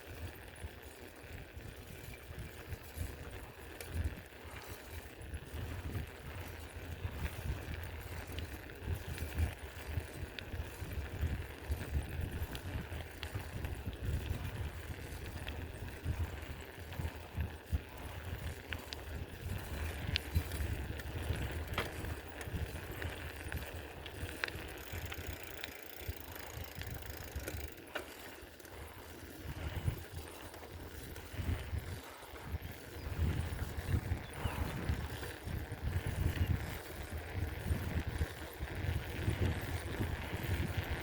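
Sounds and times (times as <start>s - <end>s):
bike clicks and rattles: 0.0s - 41.0s
low fluttering rumble: 28.6s - 38.2s.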